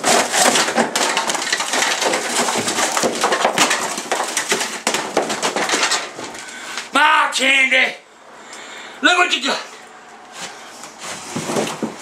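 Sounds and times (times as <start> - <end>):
wood crashing and splintering: 0.0 - 6.9, 11.1 - 12.0
sharp impacts: 0.0 - 7.0.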